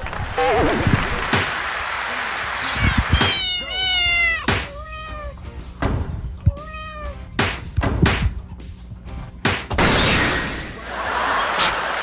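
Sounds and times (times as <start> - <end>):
cat meowing: 2.5 - 5.5, 6.3 - 7.3
sharp thuds and knocks: 4.4 - 4.8, 5.8 - 6.6, 7.4 - 8.4, 9.4 - 10.0.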